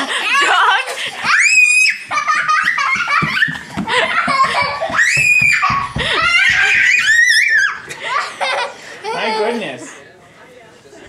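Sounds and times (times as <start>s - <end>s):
child squealing and laughing: 1.2s - 3.6s, 4.2s - 8.6s
child shrieking: 5.0s - 7.8s.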